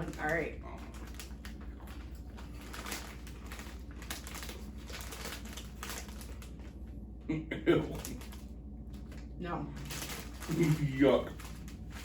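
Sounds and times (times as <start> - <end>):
crisps being crunched: 0.0 - 6.9, 7.8 - 12.0.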